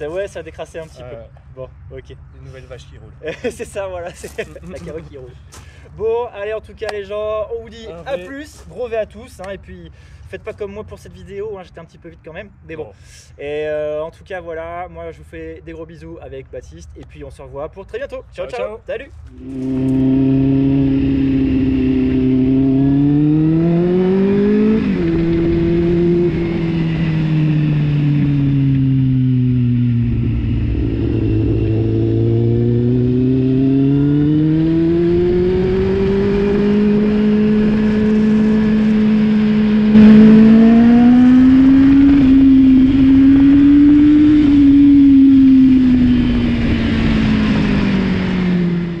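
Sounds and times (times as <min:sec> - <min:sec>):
motorcycle engine revving: 0:19.3 - 0:49.0.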